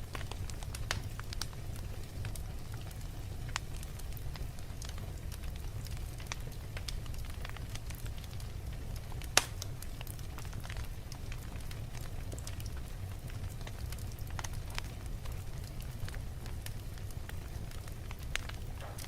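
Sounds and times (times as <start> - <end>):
wood fire crackling: 0.0 - 19.0
loud pop from fire: 9.0 - 10.8, 18.1 - 19.0.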